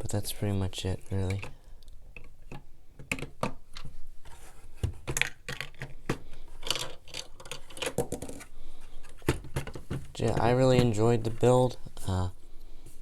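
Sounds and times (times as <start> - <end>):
plastic bricks clicking: 5.1 - 8.4.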